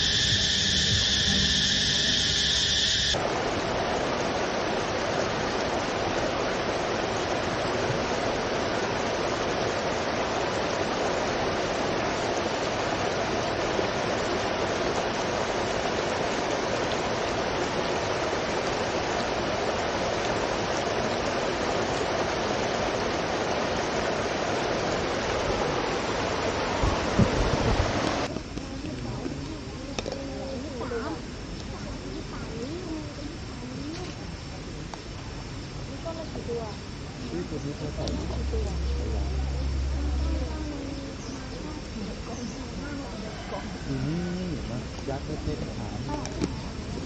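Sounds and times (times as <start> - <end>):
high steady layered sound: 0.0 - 25.4, 35.9 - 43.0
steady rushing noise: 0.0 - 28.3, 37.0 - 42.2.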